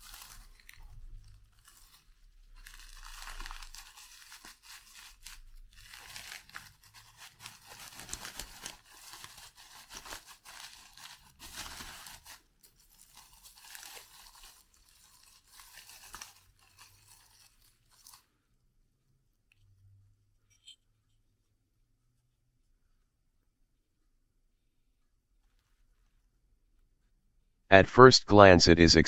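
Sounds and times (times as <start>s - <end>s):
packaging tearing and crinkling: 0.0s - 18.2s.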